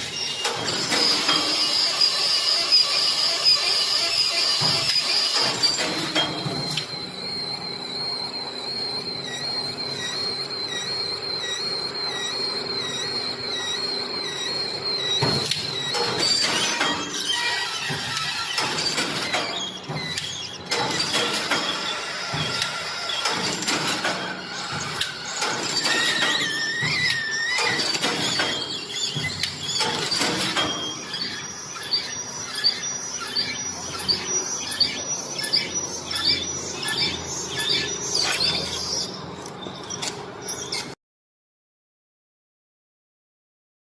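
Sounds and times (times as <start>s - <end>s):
weaving machine squealing: 0.0s - 41.0s
whistling tones: 6.6s - 16.8s.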